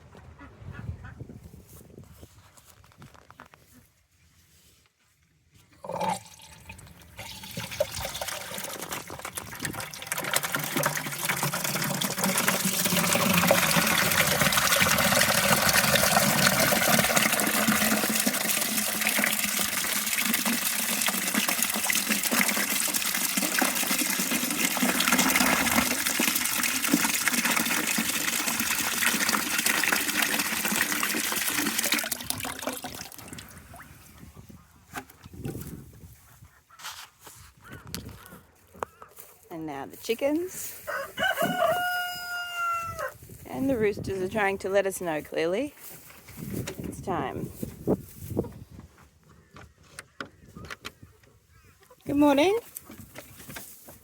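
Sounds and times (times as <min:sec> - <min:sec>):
water running into a bucket: 0:05.8 - 0:34.1, 0:52.1 - 0:53.2.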